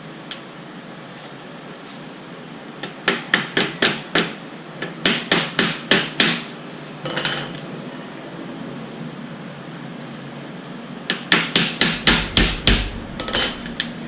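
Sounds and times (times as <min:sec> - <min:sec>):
hand tool striking radiator: 0:11.1 - 0:13.8.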